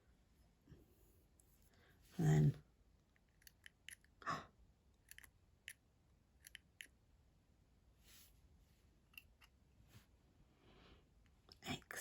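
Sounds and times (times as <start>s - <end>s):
mechanical pencil clicks and taps: 5.0s - 5.8s, 6.4s - 7.0s.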